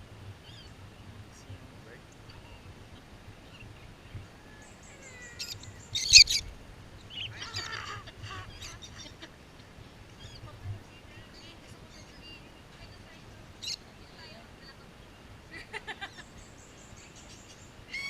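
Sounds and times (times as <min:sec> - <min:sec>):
bird squawking: 0:04.8 - 0:06.5, 0:07.1 - 0:09.2.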